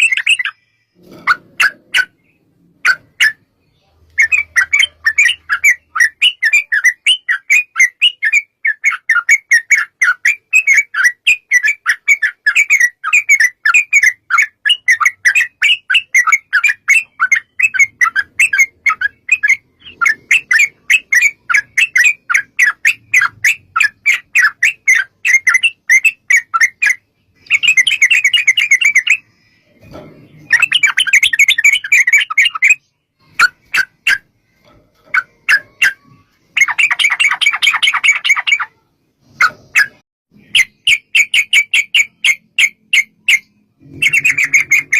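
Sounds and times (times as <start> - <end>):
bird chattering sharp chirps: 30.4 - 34.3, 35.1 - 38.8.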